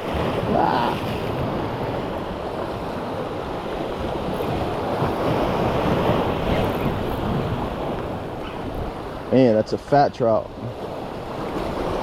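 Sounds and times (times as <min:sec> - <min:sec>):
wind buffeting microphone: 0:00.0 - 0:09.4
waves washing against rocks: 0:00.0 - 0:12.0.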